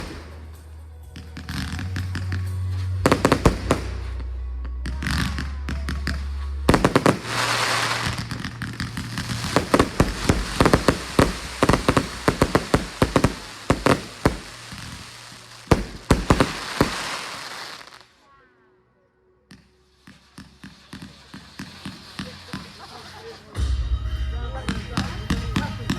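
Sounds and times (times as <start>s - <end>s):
music with steady bass: 0.0s - 17.4s, 23.6s - 25.9s
fireworks banging and crackling: 0.0s - 18.1s, 19.5s - 23.6s, 24.7s - 25.9s.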